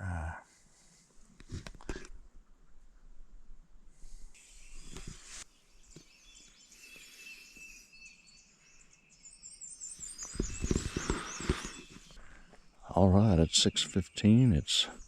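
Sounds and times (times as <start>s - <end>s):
brief hiss: 4.0s - 5.5s
high bird chirps: 4.4s - 12.8s.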